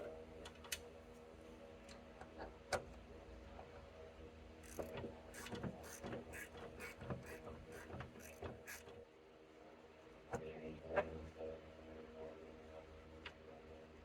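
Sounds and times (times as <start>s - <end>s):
hand ratchet clicking: 4.7s - 8.8s.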